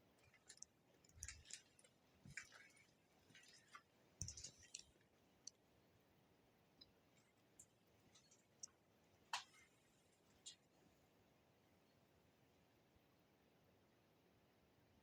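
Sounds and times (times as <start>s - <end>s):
crunching footsteps: 0.1s - 5.1s.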